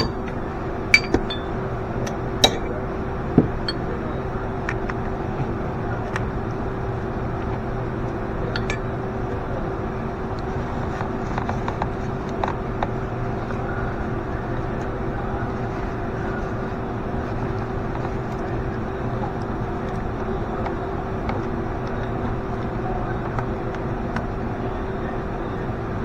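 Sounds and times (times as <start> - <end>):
steady mechanical hum: 0.0 - 26.0
light metallic clinks: 1.0 - 1.6, 2.4 - 2.7, 8.6 - 8.9.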